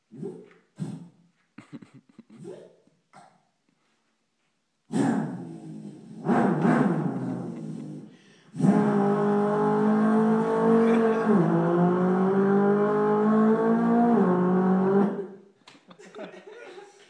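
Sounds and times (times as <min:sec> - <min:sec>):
person imitating car engine: 0:04.9 - 0:15.3.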